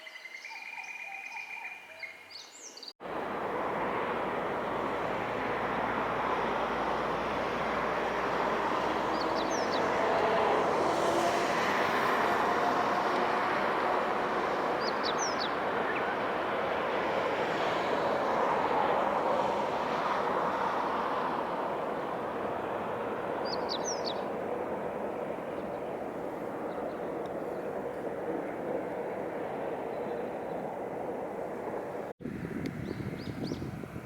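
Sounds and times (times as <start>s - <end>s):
distant engines and traffic: 3.0s - 34.0s
small birds chirping: 9.1s - 9.9s, 14.8s - 16.2s, 23.4s - 24.4s.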